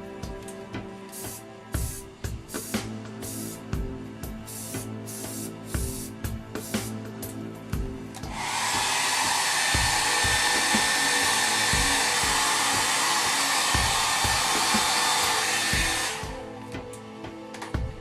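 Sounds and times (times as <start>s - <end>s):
background music with beat: 0.0s - 18.0s
handheld blower running: 8.2s - 16.5s.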